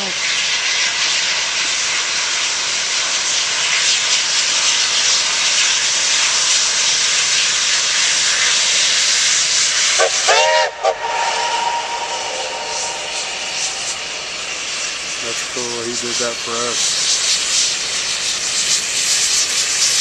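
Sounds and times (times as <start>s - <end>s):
steam locomotive venting steam: 0.0s - 20.0s
steam whistle toots: 9.7s - 15.0s.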